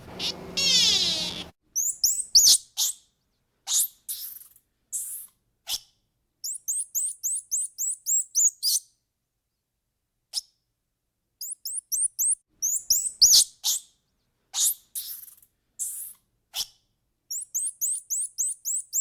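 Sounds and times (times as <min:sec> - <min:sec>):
harsh raspy bird calls: 0:00.0 - 0:01.5
small bird chirping: 0:00.0 - 0:03.0, 0:03.7 - 0:05.3, 0:06.4 - 0:08.8, 0:11.4 - 0:14.0, 0:14.6 - 0:16.7, 0:17.3 - 0:19.0.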